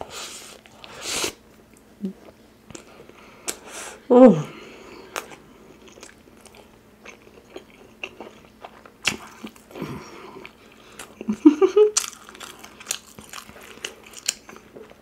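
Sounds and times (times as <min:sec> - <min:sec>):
person chewing and biting: 0:05.1 - 0:11.3, 0:11.9 - 0:15.0.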